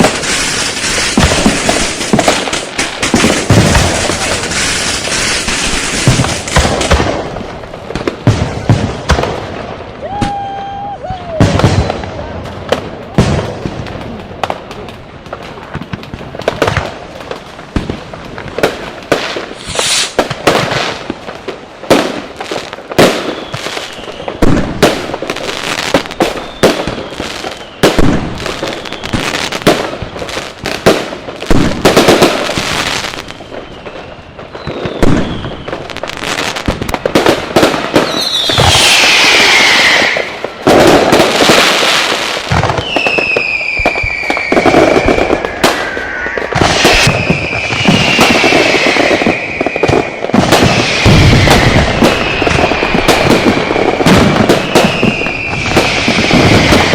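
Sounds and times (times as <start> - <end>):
firecrackers banging: 0.0 - 56.9
falling firework whistle: 10.0 - 12.1, 19.5 - 20.6, 23.0 - 24.8, 25.6 - 29.8, 31.9 - 36.8, 37.6 - 56.9.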